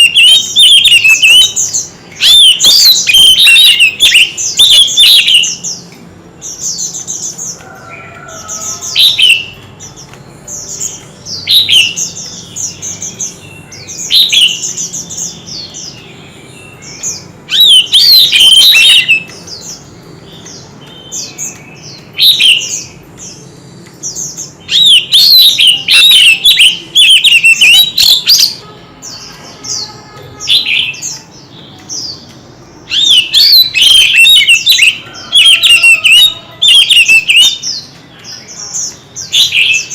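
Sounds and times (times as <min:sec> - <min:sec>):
bird singing whistled phrases: 0:00.0 - 0:05.8, 0:10.8 - 0:19.7, 0:20.9 - 0:22.9, 0:24.6 - 0:31.2, 0:32.9 - 0:39.9.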